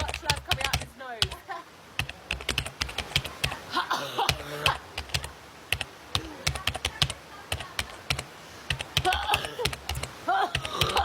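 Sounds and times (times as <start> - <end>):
rapid irregular clicks: 0.0 - 3.6, 4.2 - 11.0
breathy vocal sound: 10.6 - 11.0.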